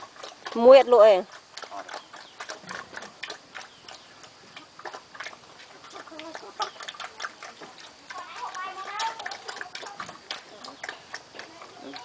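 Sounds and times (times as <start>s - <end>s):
pigs chewing feed: 0.0s - 12.0s.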